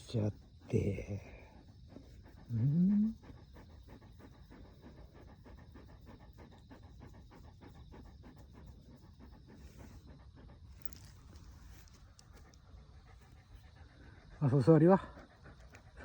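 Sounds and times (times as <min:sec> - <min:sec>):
dog panting: 0:00.0 - 0:16.0
dog rising vocal sound: 0:02.1 - 0:04.9.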